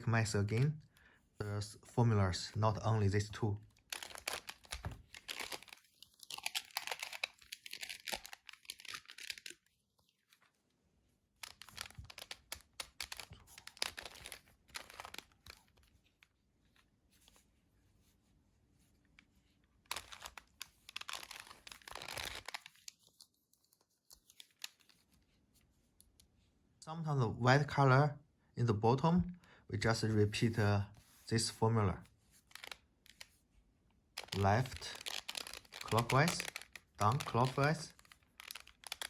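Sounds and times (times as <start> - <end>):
plastic puzzle cube clicking: 11.4 - 15.3, 34.2 - 39.0.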